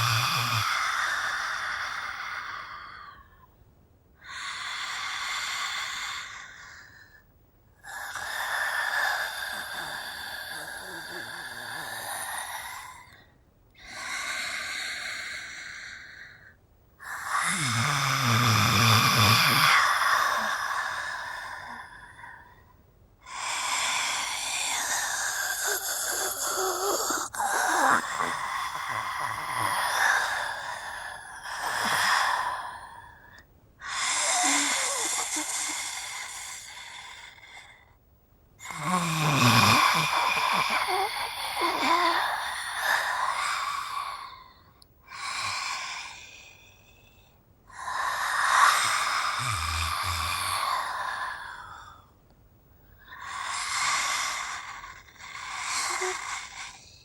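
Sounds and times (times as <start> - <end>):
raspy female growls and moans: 25.4 - 30.3, 34.1 - 35.9, 38.7 - 42.3.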